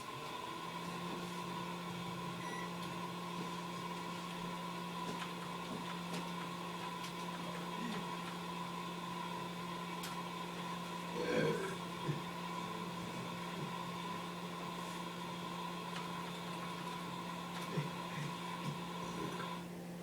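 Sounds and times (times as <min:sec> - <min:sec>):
appliance electrical hum: 0:00.0 - 0:20.0
man burping: 0:11.1 - 0:12.3.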